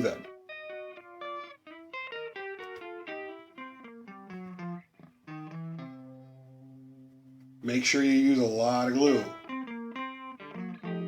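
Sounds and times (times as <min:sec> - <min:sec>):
plucked guitar melody: 0:00.0 - 0:11.0.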